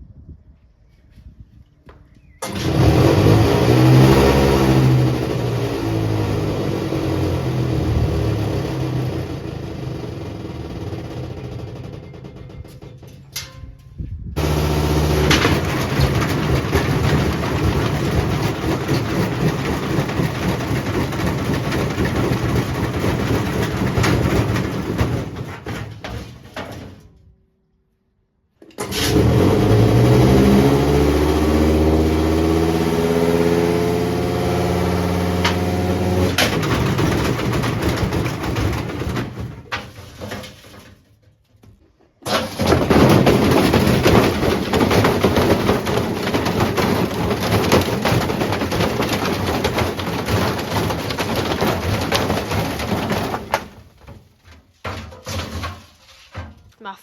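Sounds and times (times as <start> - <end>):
washing machine clattering: 14.4 - 27.0, 35.3 - 40.6, 42.3 - 55.8.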